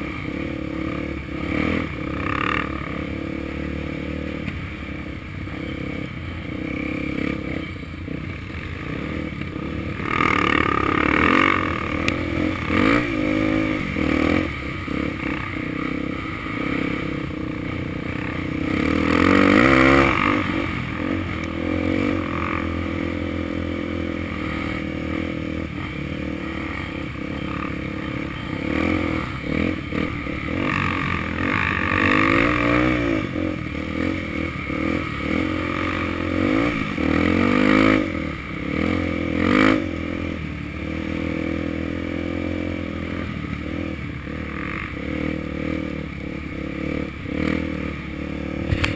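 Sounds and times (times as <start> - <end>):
dirt bike engine revving: 0.0 - 48.9.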